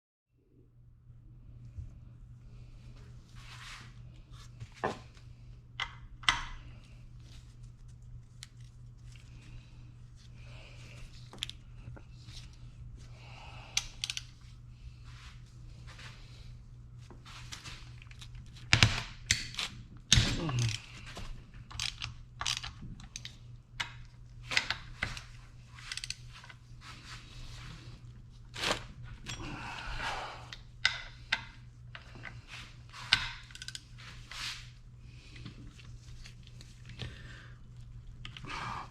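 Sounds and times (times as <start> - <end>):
steady low hum: 0.4 - 38.9.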